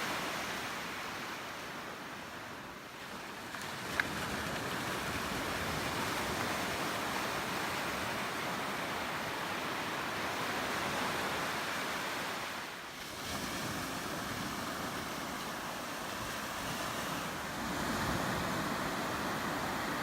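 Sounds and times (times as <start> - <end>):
ocean surf washing: 0.0 - 20.0
wind noise on microphone: 13.1 - 20.0.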